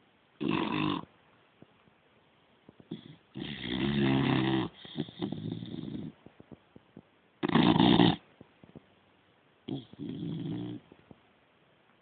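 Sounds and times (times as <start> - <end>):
dog snoring: 0.4 - 1.1, 2.9 - 6.2, 7.4 - 8.3, 9.7 - 10.9.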